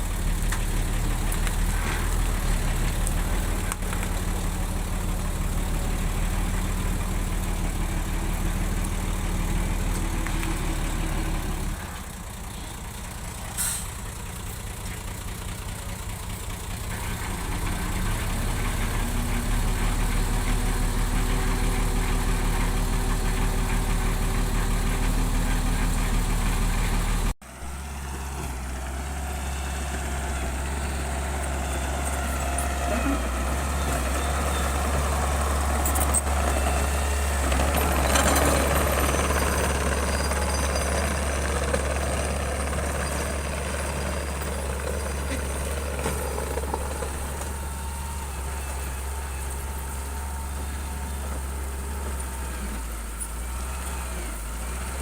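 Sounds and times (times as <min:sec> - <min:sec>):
heavy machine engine running: 0:00.0 - 0:55.0
engine drone: 0:16.8 - 0:55.0.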